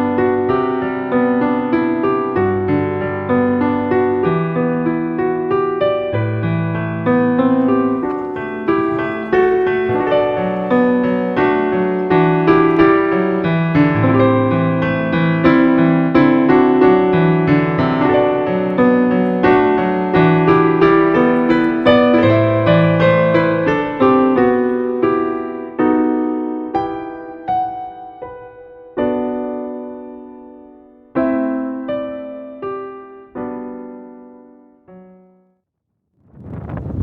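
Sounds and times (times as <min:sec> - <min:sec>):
slow piano melody: 0:07.2 - 0:30.1.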